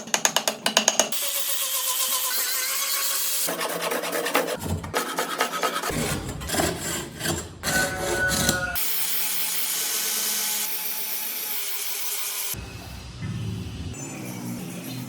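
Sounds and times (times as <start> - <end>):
sanding noise: 1.3 - 8.6
woodworking tool noises: 3.4 - 8.9.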